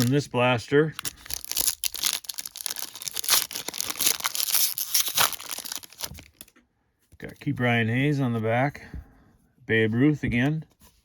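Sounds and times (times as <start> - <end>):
wrapper tearing and crinkling: 0.0 - 0.3, 1.0 - 6.5.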